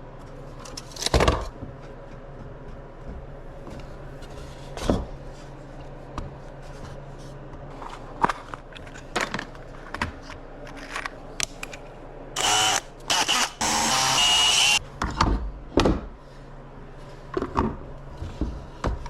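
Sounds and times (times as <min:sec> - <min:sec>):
power drill running: 0:12.4 - 0:14.8.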